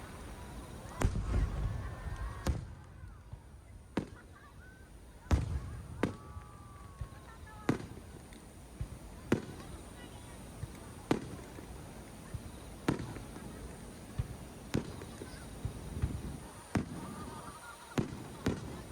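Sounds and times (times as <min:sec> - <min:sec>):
fireworks bursting: 0:00.0 - 0:18.9.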